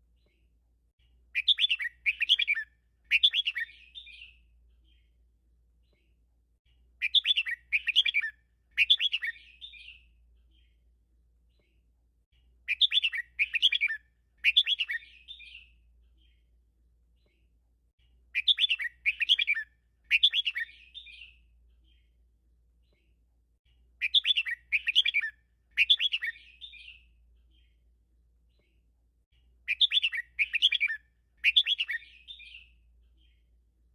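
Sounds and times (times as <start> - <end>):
bulbul singing: 1.4 - 5.0, 7.0 - 10.8, 12.7 - 16.4, 18.4 - 22.1, 24.0 - 27.8, 29.7 - 33.4.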